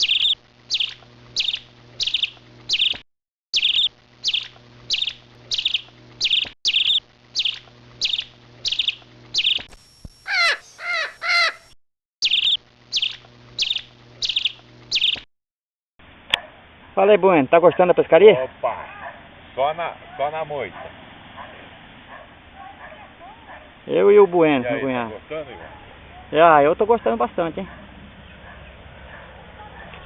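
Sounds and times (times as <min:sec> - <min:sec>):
bird call sweeping in pitch: 0:00.0 - 0:03.0, 0:10.2 - 0:15.2
short harsh bird calls: 0:00.0 - 0:03.0, 0:10.2 - 0:15.2.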